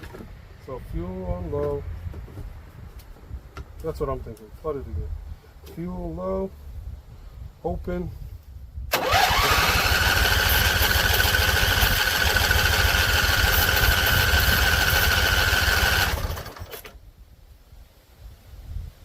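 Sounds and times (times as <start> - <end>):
engine whine: 8.9 - 17.0
mower engine turning over: 8.9 - 17.0.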